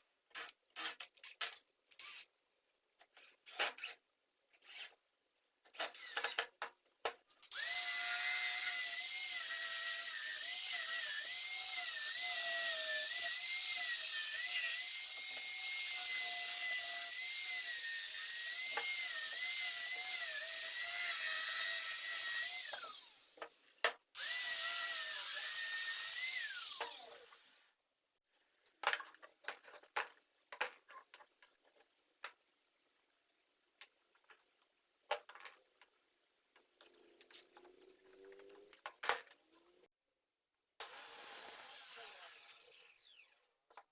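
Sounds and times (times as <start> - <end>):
electric power tool whining: 7.5 - 23.6, 24.2 - 27.6.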